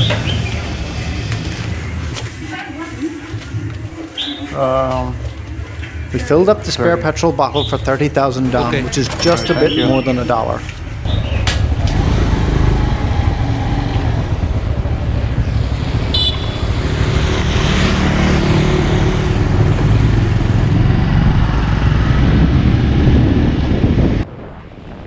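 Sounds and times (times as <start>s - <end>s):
road and wind rumble: 0.0s - 25.0s
short high beep: 8.5s - 10.8s.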